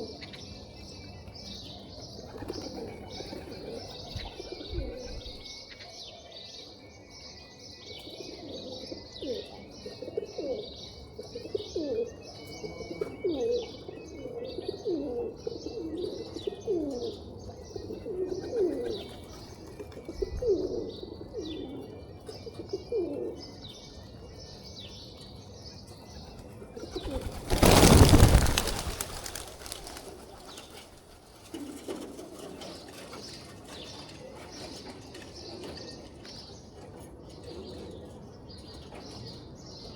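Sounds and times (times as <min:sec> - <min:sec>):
pigeons cooing: 0:02.2 - 0:05.5, 0:08.1 - 0:12.1, 0:12.8 - 0:23.6, 0:26.6 - 0:33.0
small birds chirping: 0:15.6 - 0:36.8
wings flapping: 0:26.9 - 0:32.3.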